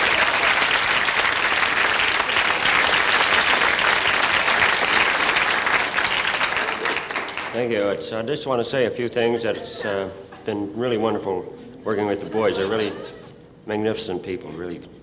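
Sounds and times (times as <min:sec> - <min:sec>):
studio audience applauding: 0:00.0 - 0:07.6.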